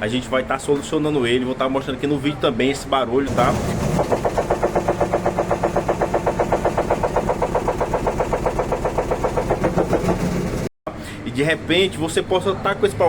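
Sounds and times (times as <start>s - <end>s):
motor hum: 3.3s - 10.7s
washing machine pulsing spin: 3.3s - 10.7s.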